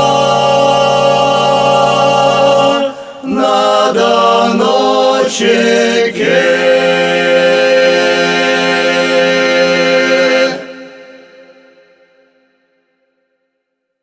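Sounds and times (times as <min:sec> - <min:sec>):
folk choir singing a cappella: 0:00.0 - 0:11.9.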